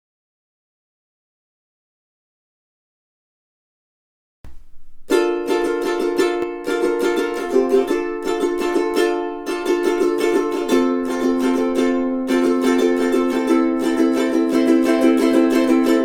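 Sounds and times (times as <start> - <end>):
ukulele strummed: 4.5 - 16.0.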